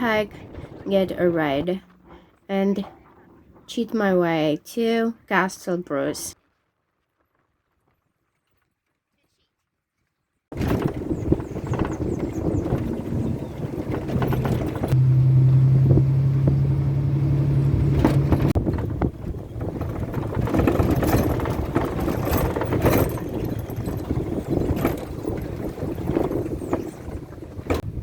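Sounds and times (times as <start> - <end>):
car engine and road rumble: 10.5 - 28.0.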